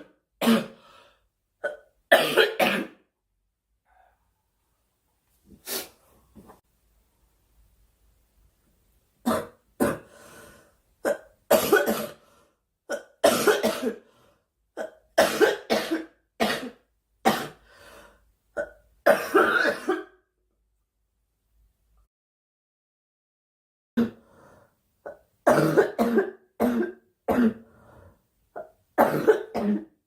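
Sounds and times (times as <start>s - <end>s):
girl coughing: 1.6s - 3.0s, 11.1s - 12.2s, 12.9s - 14.0s, 14.8s - 17.6s, 18.6s - 20.1s, 25.5s - 27.6s, 28.6s - 30.0s.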